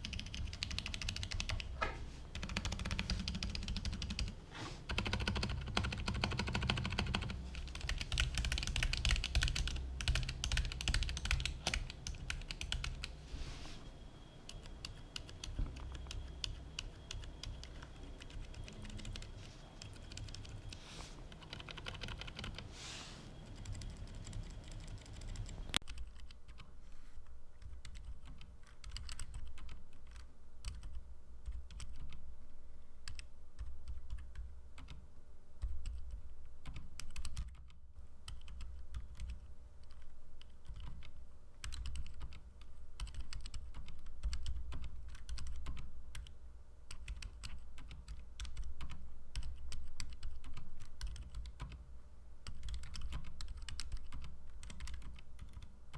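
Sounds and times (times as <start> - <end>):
typing on mechanical keyboard: 0.0 - 13.1, 14.5 - 22.7, 23.4 - 26.7, 27.6 - 32.2, 33.0 - 35.0, 35.6 - 51.8, 52.4 - 55.7.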